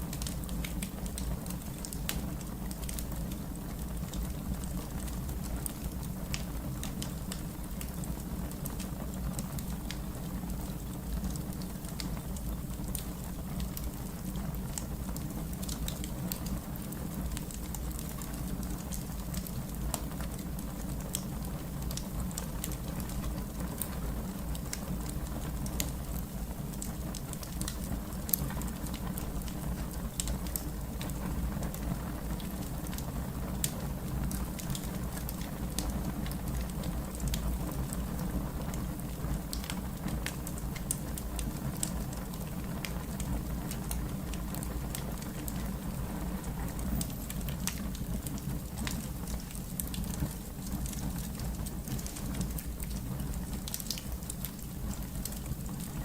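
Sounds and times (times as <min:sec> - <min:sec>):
fire crackling: 0:00.0 - 0:56.0.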